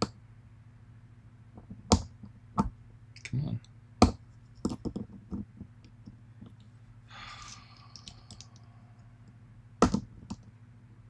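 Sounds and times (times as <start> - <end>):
soft breathy sigh: 7.1 - 9.5.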